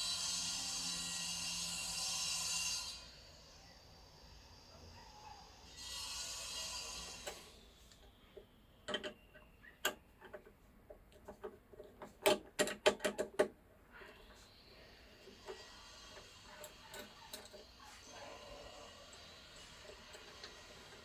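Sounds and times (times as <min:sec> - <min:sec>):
clicks of small hard parts: 0:08.9 - 0:13.6.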